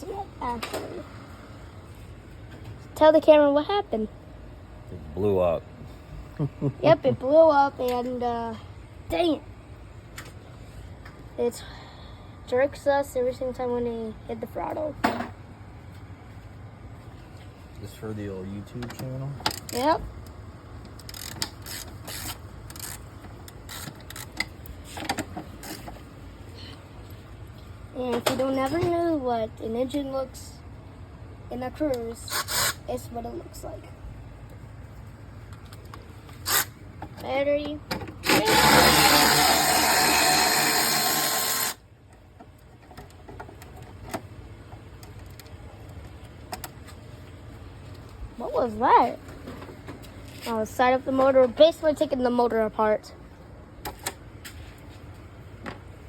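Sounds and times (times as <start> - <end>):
low background hum: 0.0 - 56.0
power tool motor running: 38.2 - 41.8.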